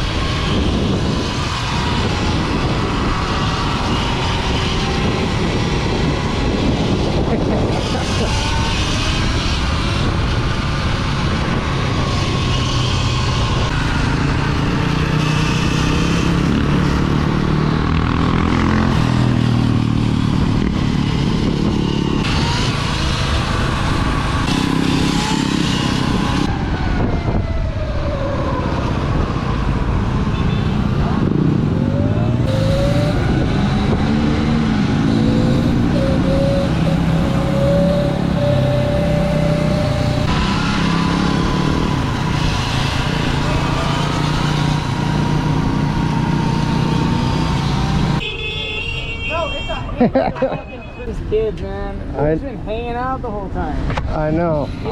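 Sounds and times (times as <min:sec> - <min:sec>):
dirt bike motors revving: 0:31.2 - 0:48.2.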